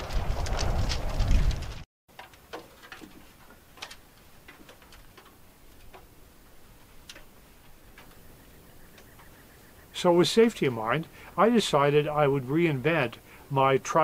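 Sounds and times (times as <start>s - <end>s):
light clicks and taps: 7.0s - 7.3s.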